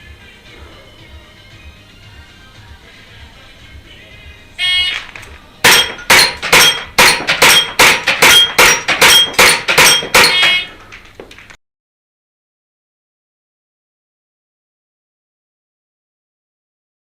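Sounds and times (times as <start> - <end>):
bb clanging on steel plate: 5.7 - 11.0
shot timer beep: 10.0 - 10.7.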